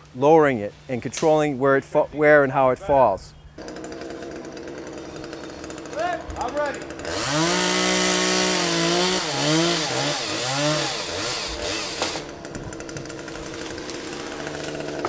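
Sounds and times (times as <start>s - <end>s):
chainsaw revving and idling: 3.6s - 15.0s.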